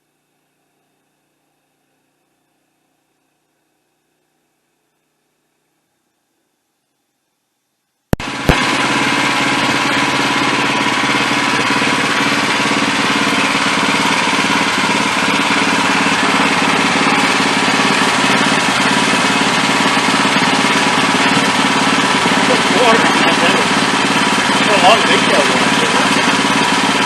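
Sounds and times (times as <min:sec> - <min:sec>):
sawmill engine running: 0:08.2 - 0:27.0.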